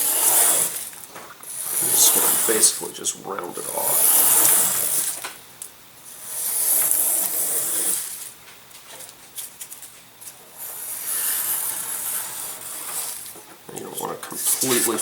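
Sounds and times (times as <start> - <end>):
hand tool scraping wood: 0.0 - 5.2, 6.1 - 8.4, 10.5 - 15.0.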